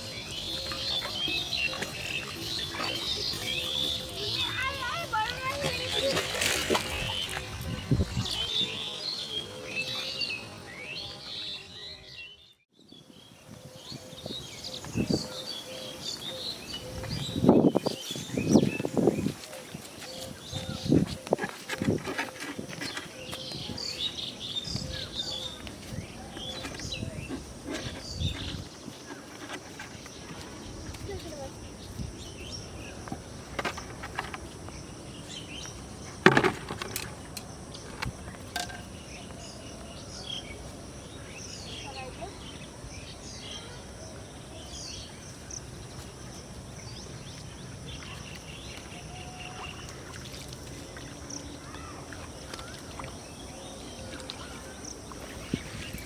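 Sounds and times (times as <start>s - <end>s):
small birds chirping: 0.0s - 36.2s, 36.9s - 56.0s.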